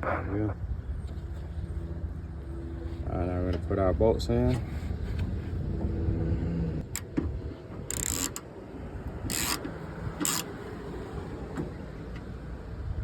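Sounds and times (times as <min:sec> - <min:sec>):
ratchet wrench clicks: 0:07.9 - 0:08.4, 0:09.3 - 0:10.5
ratchet wrench ratcheting: 0:07.9 - 0:08.4, 0:09.3 - 0:10.5.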